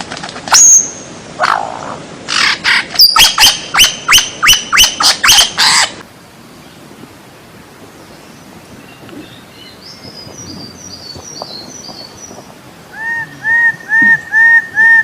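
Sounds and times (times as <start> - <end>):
high twittering bird chirps: 8.9 - 14.8
whistled bird call notes: 13.0 - 15.0.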